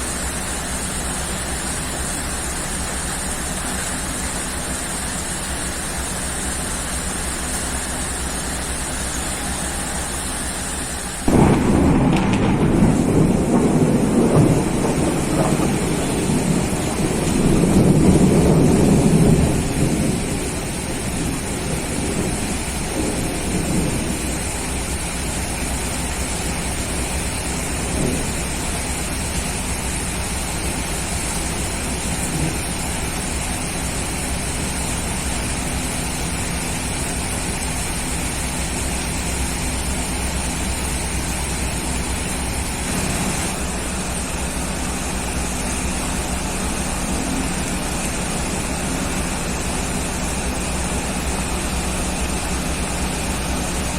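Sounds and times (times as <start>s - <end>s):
heavy rain: 0.0s - 53.9s
thunder rumbling: 11.2s - 33.8s, 40.2s - 53.8s.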